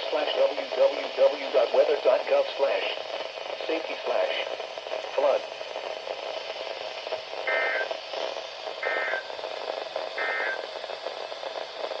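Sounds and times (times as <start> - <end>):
radio hiss: 0.0 - 12.0
digital data tone bursts: 7.5 - 7.9, 8.8 - 9.3, 10.2 - 10.7.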